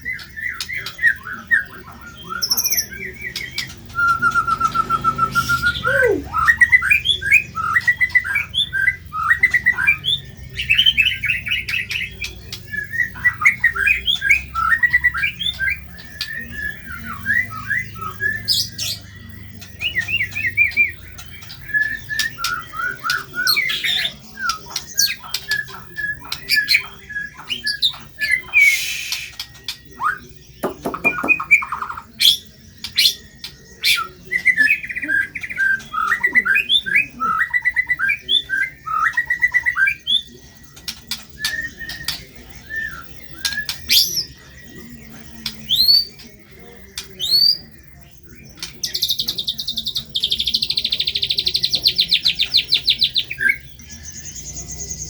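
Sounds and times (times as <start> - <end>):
bird singing whistled trills: 0.0 - 55.0
harsh scratchy bird calls: 0.0 - 55.0.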